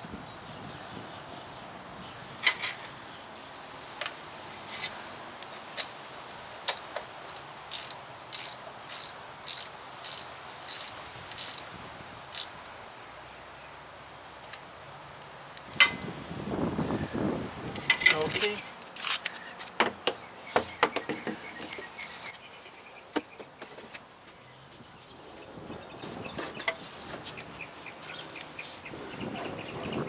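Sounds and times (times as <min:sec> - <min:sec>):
socket ratchet clicking: 0:06.7 - 0:11.6.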